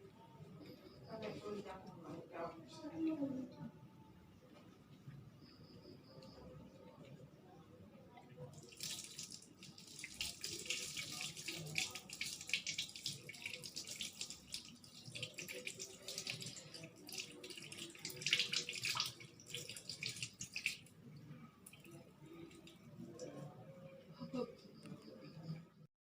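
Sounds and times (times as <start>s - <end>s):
tap water splashing over hands: 8.6s - 20.9s.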